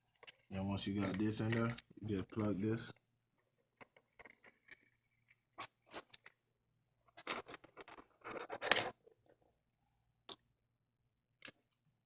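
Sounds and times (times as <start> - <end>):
small clicks and scratching: 0.0 - 6.4, 7.0 - 9.6.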